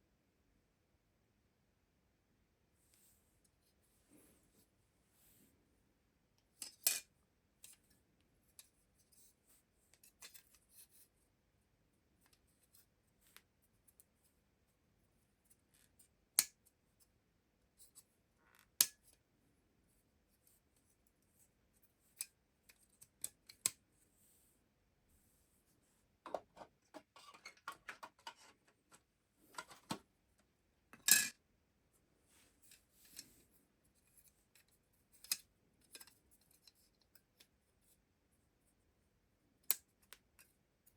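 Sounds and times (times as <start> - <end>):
light scraping of tools: 26.3 - 30.0.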